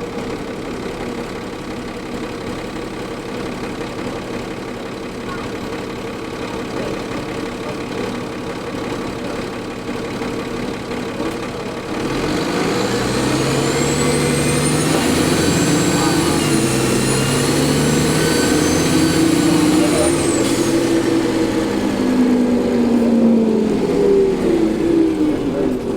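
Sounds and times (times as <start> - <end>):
bus diesel engine accelerating: 0.0 - 25.9
high turbo whine: 12.0 - 25.9.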